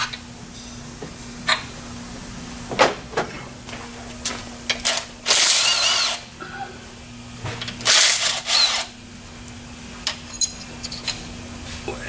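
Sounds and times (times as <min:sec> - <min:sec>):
handheld power tool whining: 0:04.8 - 0:06.3, 0:07.8 - 0:08.9.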